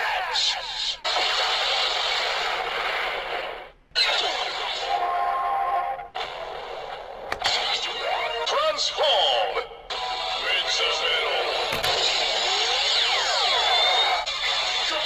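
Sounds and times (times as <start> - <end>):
toy electronic sound effects: 9.9 - 14.9.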